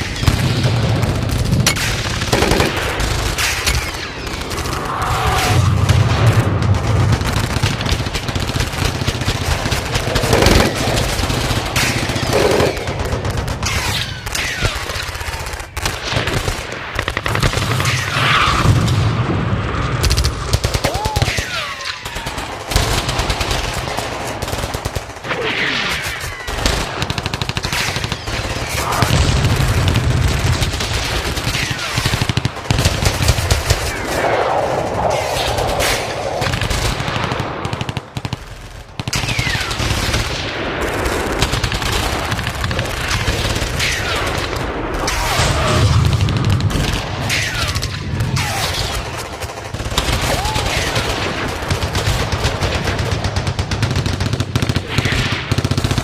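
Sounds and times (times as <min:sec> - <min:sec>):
machine-gun bursts: 0:01.3 - 0:04.8, 0:07.0 - 0:13.9
low rumble: 0:04.4 - 0:08.0, 0:34.0 - 0:37.9.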